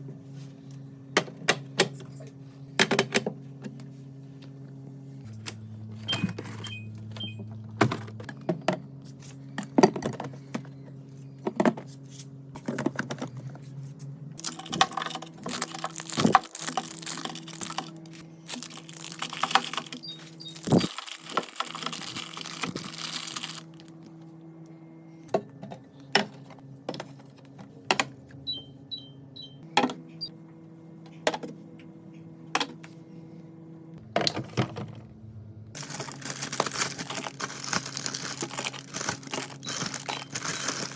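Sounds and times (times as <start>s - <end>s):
fridge hum: 0.0s - 40.9s
plastic containers clicking and knocking: 14.4s - 20.0s, 35.8s - 40.9s
packaging rustling: 14.4s - 24.0s, 35.8s - 40.9s.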